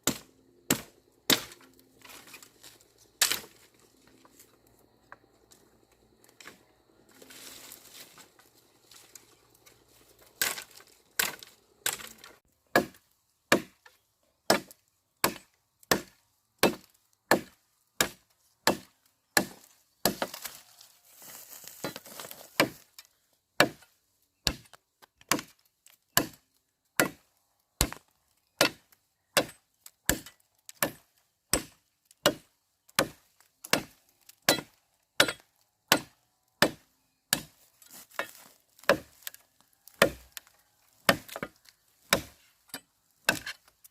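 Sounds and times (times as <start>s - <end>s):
chopping into wood: 0.0s - 2.5s, 3.2s - 3.7s, 10.4s - 13.9s, 14.5s - 20.6s, 21.7s - 22.8s, 23.6s - 43.6s
rustling: 7.1s - 11.0s, 20.3s - 22.6s.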